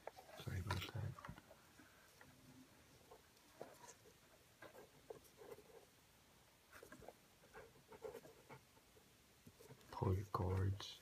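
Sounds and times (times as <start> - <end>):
cord rustling and ticking: 0.0 - 5.9.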